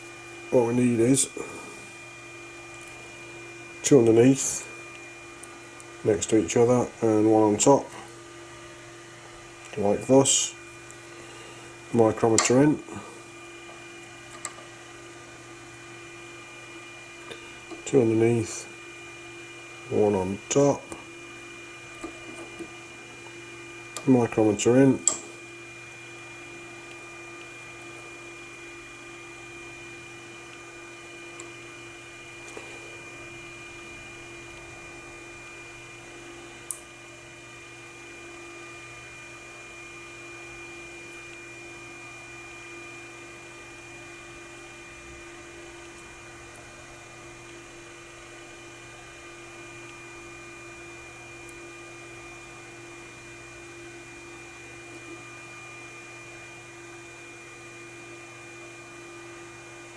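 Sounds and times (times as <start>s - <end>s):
machine hum: 0.0s - 59.9s
sharp click: 25.0s - 25.3s.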